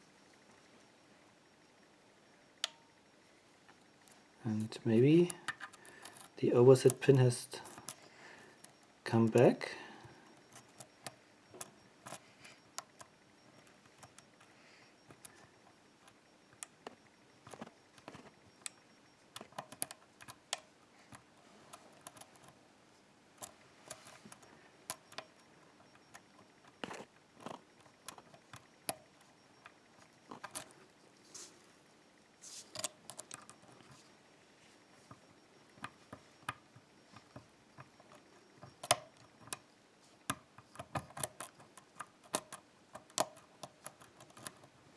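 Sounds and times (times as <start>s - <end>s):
lock pick clicking and scraping: 5.2s - 9.5s, 10.4s - 22.6s, 23.4s - 30.8s, 35.8s - 44.7s.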